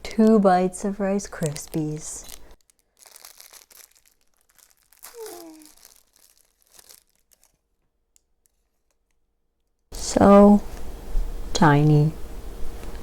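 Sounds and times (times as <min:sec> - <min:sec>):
plastic wrapper crinkling: 0:01.2 - 0:09.2.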